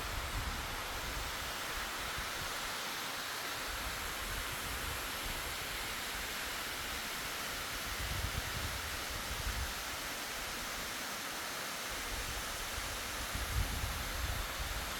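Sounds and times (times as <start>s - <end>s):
low wind rumble on microphone: 0.0s - 2.6s, 7.7s - 10.0s, 12.1s - 14.9s
waterfall rushing: 0.0s - 14.9s.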